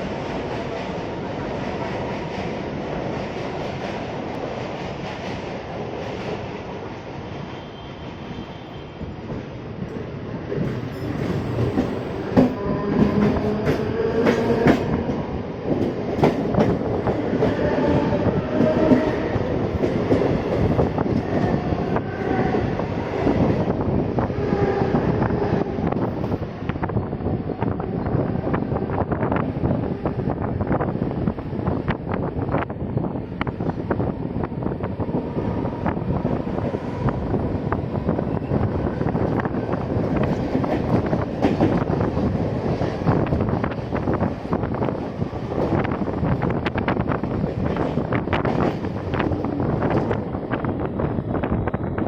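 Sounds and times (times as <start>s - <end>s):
train clattering on rails: 9.3s - 27.0s, 34.9s - 52.0s.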